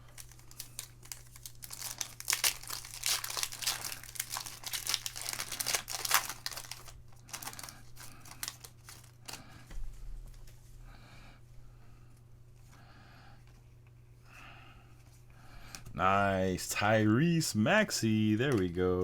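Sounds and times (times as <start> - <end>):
foil wrappers tearing and crinkling: 0.0 - 9.5.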